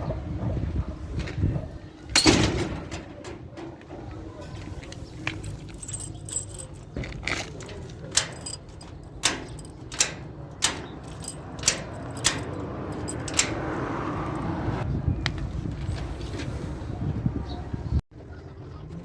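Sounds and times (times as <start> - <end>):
sharp clicks and knocks: 5.3 - 13.7.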